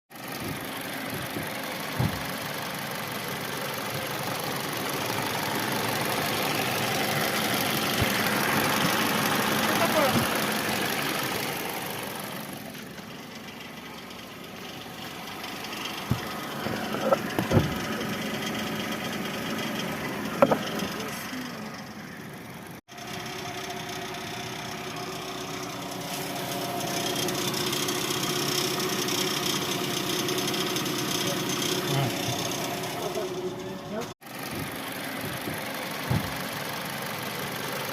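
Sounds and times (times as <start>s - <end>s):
car engine knocking: 0.1s - 37.9s
single thump: 36.1s - 36.4s.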